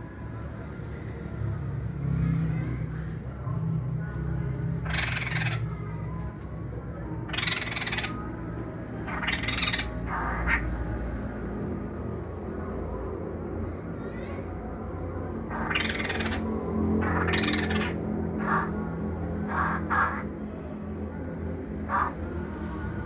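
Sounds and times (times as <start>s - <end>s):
bird giving harsh raspy calls: 4.8s - 5.7s, 7.2s - 8.2s, 9.1s - 10.7s, 15.5s - 20.4s, 21.8s - 22.2s.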